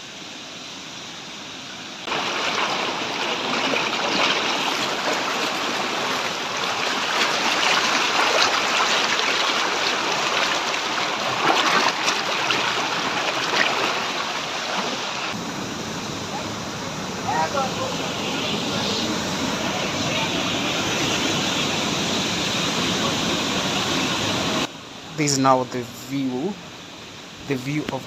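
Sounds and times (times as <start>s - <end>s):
waterfall rushing water: 0.0s - 28.0s.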